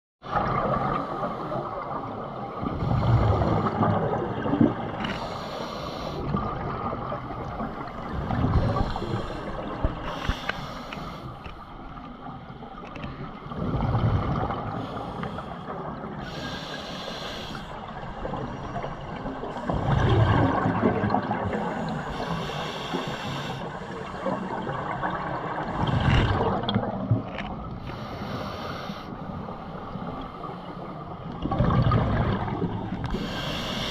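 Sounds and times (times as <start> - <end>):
exhaled bubbles gushing: 2.1 - 5.0, 6.2 - 10.1, 13.4 - 15.0, 17.9 - 22.3, 24.3 - 27.6, 31.3 - 33.2
hissing regulator inhale: 5.0 - 6.4, 8.6 - 11.6, 14.8 - 17.8, 21.4 - 24.5, 27.8 - 30.8, 33.1 - 33.9.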